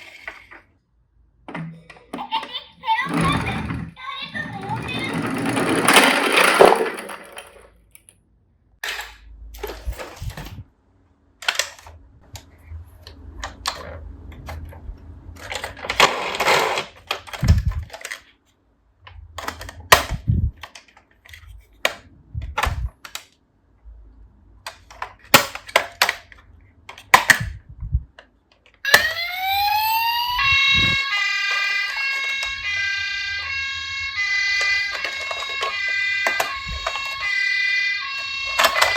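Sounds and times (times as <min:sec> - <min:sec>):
plastic toy cars knocking: 0:01.5 - 0:07.7, 0:24.7 - 0:27.5, 0:38.5 - 0:38.9
rattling noise: 0:02.9 - 0:07.7
toy electronic siren: 0:28.8 - 0:38.9.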